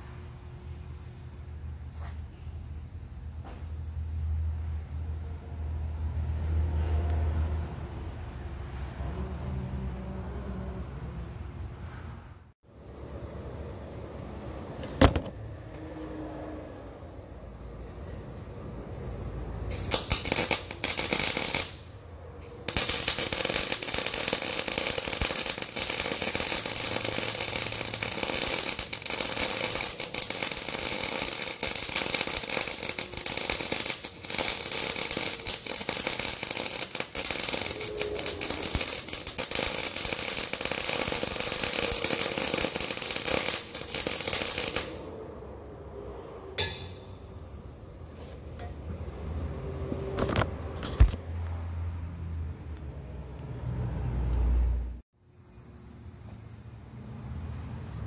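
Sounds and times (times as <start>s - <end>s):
arc welding crackling: 19.7s - 45.0s.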